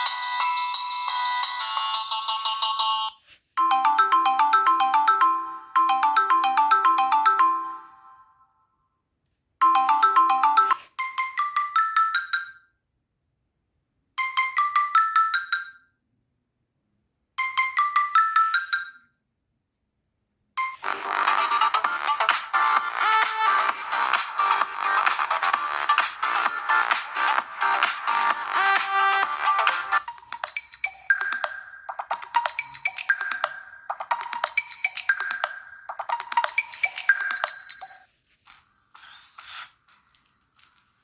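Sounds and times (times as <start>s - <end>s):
melodic phone ringtone: 0.0s - 8.4s, 9.6s - 12.7s, 17.4s - 19.0s, 20.6s - 38.4s.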